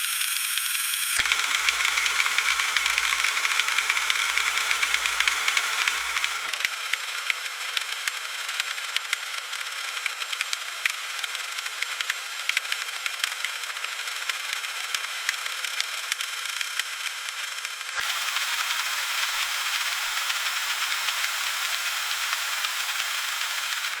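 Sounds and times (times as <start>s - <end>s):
freezing rain hiss: 1.2s - 6.5s, 18.0s - 24.0s.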